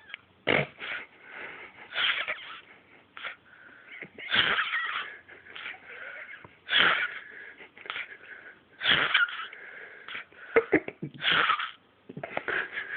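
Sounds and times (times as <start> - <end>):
quiet breathing: 1.0 - 1.9, 2.6 - 4.1, 5.0 - 8.8, 9.5 - 10.7.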